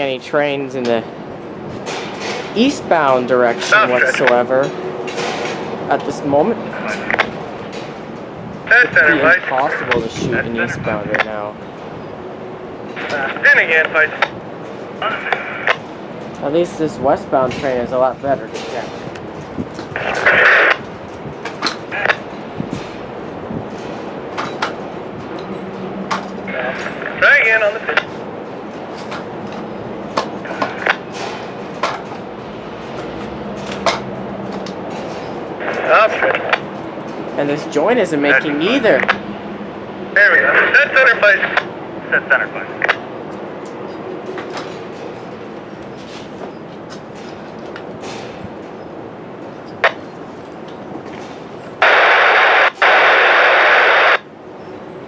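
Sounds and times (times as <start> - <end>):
radio static hiss: 2.6 - 4.5, 6.3 - 7.3, 8.6 - 11.6, 12.9 - 14.4, 15.0 - 15.8, 19.8 - 20.9, 21.6 - 22.7, 25.9 - 28.2, 29.0 - 31.1, 35.6 - 36.6, 37.4 - 39.2, 40.1 - 43.1, 51.8 - 54.3
wind buffeting microphone: 4.7 - 37.4
sharp knocks: 17.5 - 27.2, 27.8 - 37.3.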